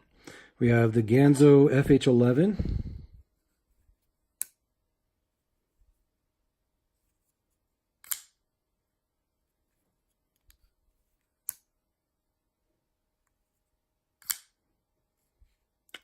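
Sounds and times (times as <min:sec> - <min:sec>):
knife clicking open and shut: 0:14.2 - 0:14.6.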